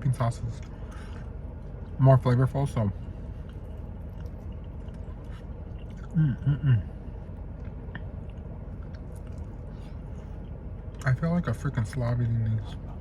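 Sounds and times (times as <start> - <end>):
person chewing: 3.4 - 6.5, 7.4 - 10.6.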